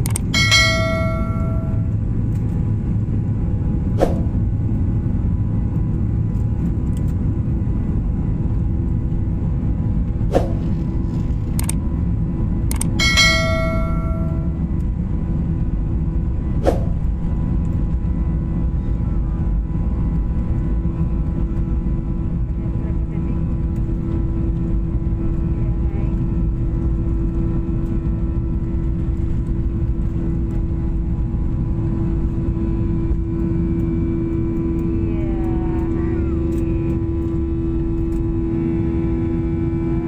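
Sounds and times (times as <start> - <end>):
sharp clicks: 0.0 - 0.3, 11.6 - 11.8, 12.7 - 12.9
airliner engines rumbling: 0.0 - 40.0
bright single chime: 0.4 - 1.9, 13.0 - 14.6.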